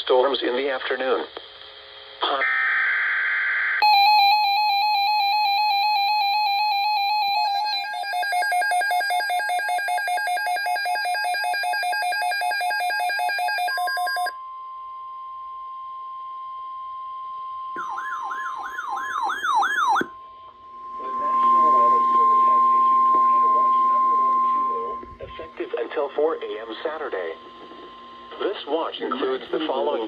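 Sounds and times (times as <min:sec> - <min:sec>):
falling siren-like sweeps: 0:17.8 - 0:25.6.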